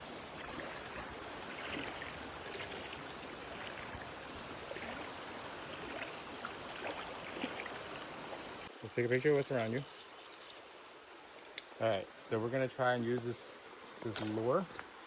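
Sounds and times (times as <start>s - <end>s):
small splashes and trickles: 0.0s - 11.5s
creek water running: 0.0s - 15.0s.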